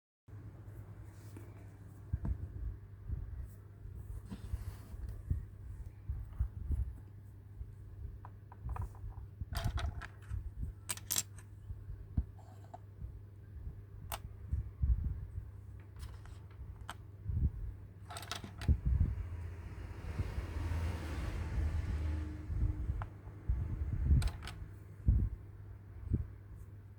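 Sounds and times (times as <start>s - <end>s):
plastic toy pieces clicking: 10.9s - 11.4s.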